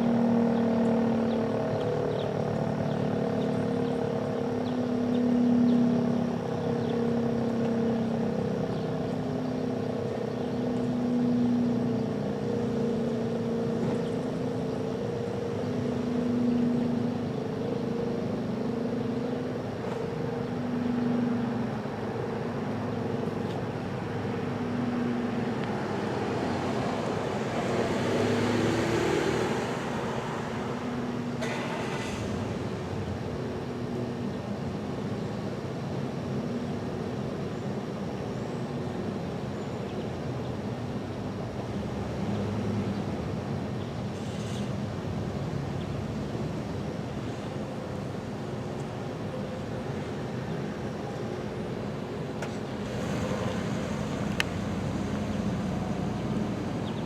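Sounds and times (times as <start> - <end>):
rotating siren wailing: 0.2 - 27.0.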